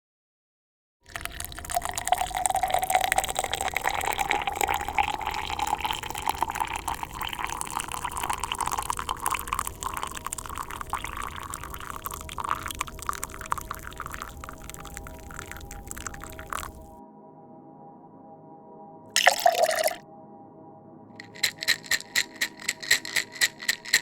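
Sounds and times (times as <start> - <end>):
drink pouring into a glass: 1.1 - 17.0, 19.2 - 20.0, 21.2 - 24.0.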